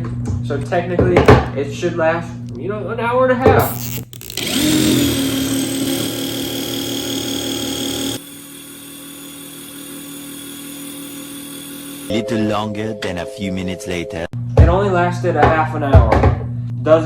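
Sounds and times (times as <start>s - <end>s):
impact driver motor whine: 3.6s - 12.1s.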